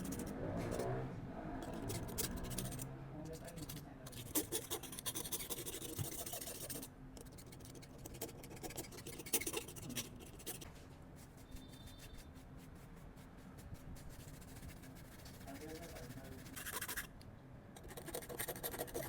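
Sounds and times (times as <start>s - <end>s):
light scratching and scraping: 8.8s - 17.0s.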